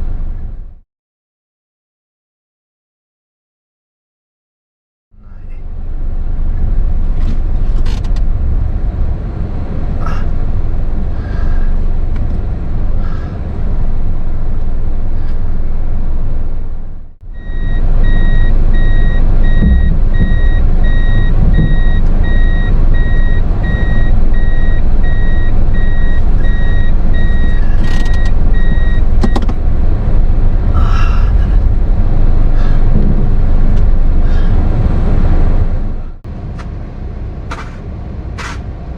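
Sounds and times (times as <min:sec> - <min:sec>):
car engine low rumble: 0:00.0 - 0:00.8, 0:05.2 - 0:38.9
electronic reverse warning beeps: 0:17.3 - 0:29.5.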